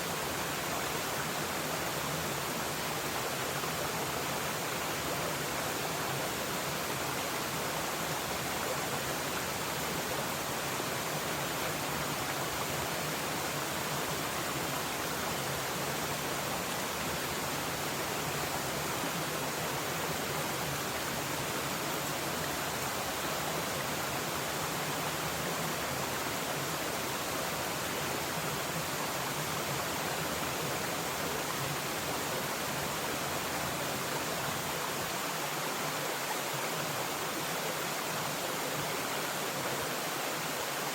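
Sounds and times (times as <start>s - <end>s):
stream water rushing: 0.0s - 40.9s.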